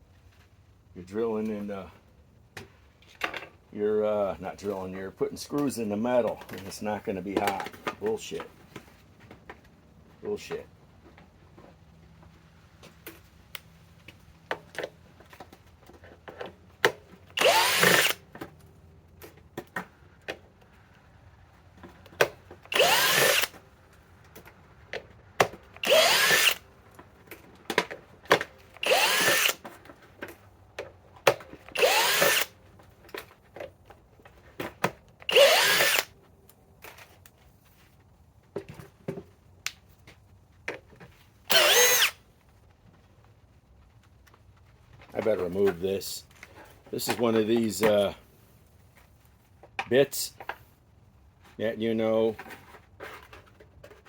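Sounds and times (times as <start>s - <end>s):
cordless drill bursts: 17.4s - 18.2s, 22.7s - 23.6s, 25.8s - 26.6s, 28.8s - 29.6s, 31.7s - 32.5s, 35.3s - 36.1s, 41.5s - 42.2s.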